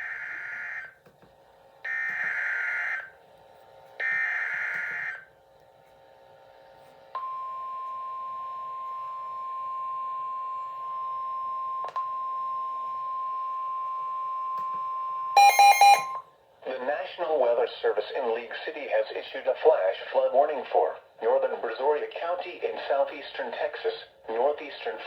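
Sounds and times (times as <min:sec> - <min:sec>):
steady high alert tone: 0:15.4 - 0:16.2.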